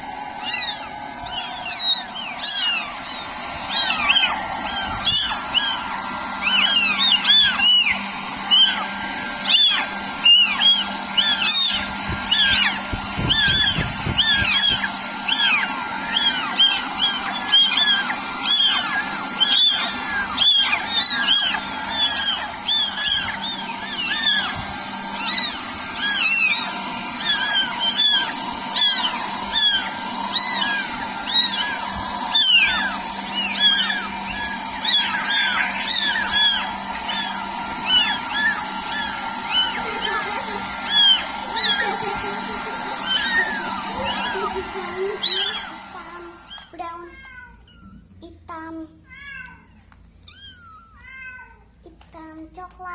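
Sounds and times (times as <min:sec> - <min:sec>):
kittens mewing: 0:00.0 - 0:48.2, 0:49.1 - 0:52.1.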